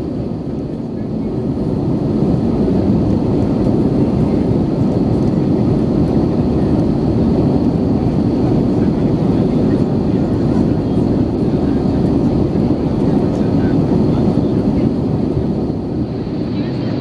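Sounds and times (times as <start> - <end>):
jet engines rumbling in cabin: 0.0 - 17.0
air rushing along fuselage: 15.7 - 17.0.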